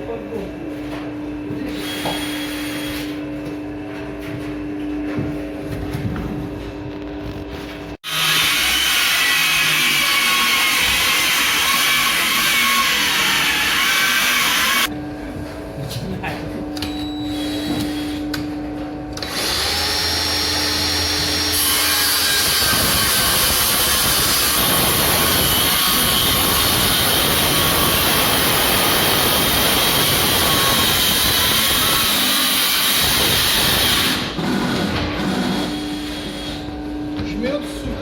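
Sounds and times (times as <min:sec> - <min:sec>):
power tool running under load: 0:01.5 - 0:03.2, 0:08.0 - 0:14.9, 0:19.2 - 0:36.6.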